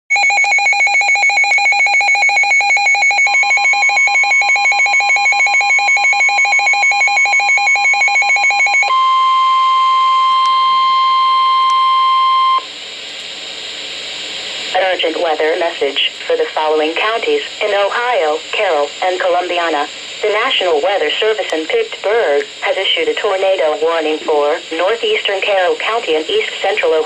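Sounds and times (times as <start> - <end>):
two-pitch warble alarm: 0.1 - 12.6
steady warning tone: 0.1 - 12.7.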